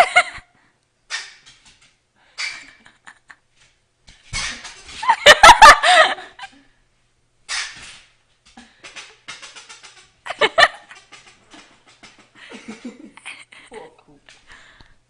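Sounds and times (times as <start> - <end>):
squeaky toy squeaking: 4.3 - 4.8
person laughing: 4.9 - 6.6, 8.6 - 14.1.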